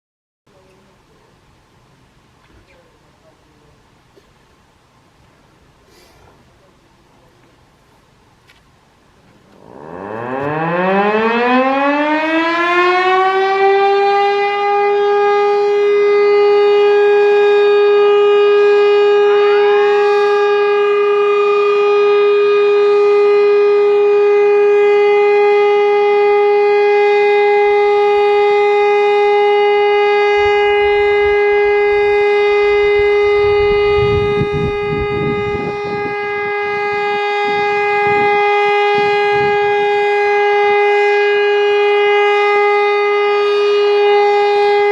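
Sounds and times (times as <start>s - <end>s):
electric siren rising to high tone: 9.5s - 44.9s.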